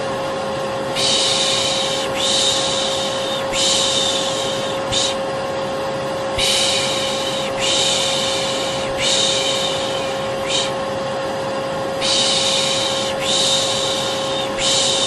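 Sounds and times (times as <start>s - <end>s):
vacuum cleaner running: 0.0s - 15.0s
person shushing: 1.0s - 5.2s, 6.4s - 10.8s, 12.0s - 15.0s.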